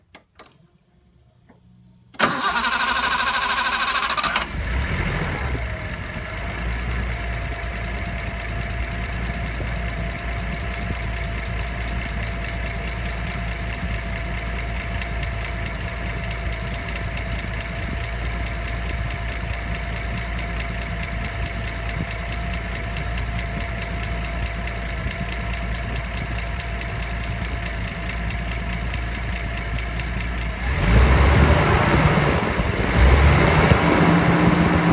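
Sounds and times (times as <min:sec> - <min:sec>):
engine cranking on starter: 0:02.1 - 0:07.4, 0:26.1 - 0:34.9
car engine idling: 0:02.2 - 0:34.9.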